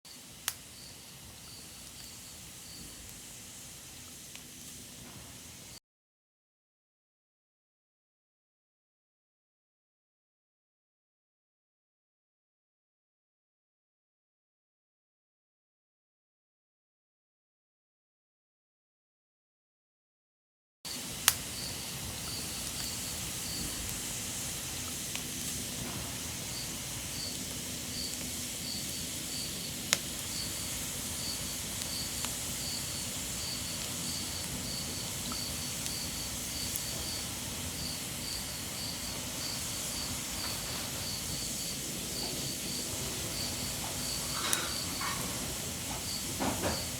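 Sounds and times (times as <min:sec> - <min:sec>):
insect chirping: 0:00.1 - 0:03.0, 0:21.0 - 0:24.8, 0:25.6 - 0:46.9
background hiss: 0:00.1 - 0:05.8, 0:20.9 - 0:46.9.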